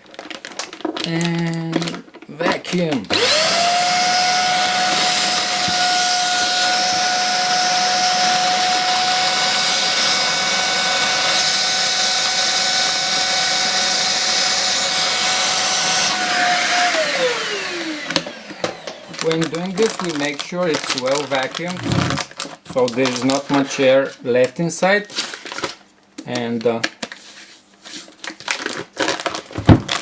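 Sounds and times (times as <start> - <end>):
vacuum cleaner motor whining: 3.1 - 20.0, 21.8 - 22.2.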